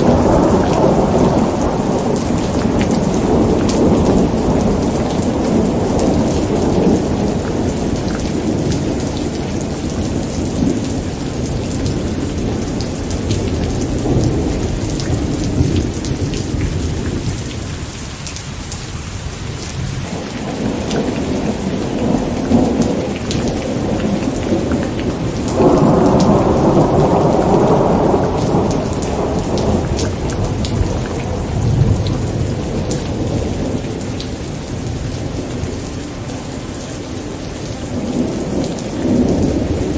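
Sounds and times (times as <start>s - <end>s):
rolling thunder: 0.0s - 17.9s, 19.5s - 39.9s
steady rain: 0.0s - 39.9s.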